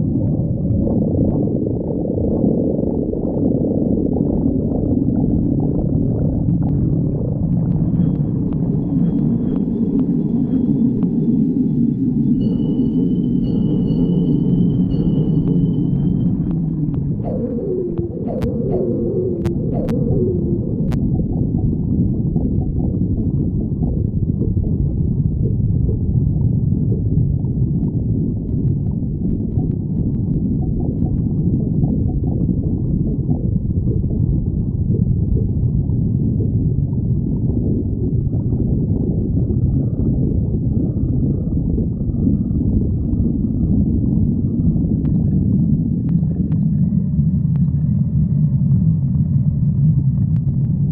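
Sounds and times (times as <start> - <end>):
stomach growling: 0.0 - 11.8, 14.8 - 50.9.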